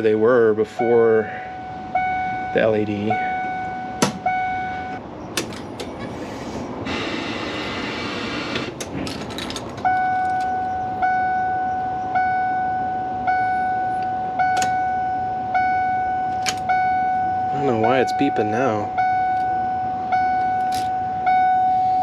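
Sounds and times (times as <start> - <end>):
dashboard warning chime beeping: 0.0 - 5.0, 9.8 - 22.0.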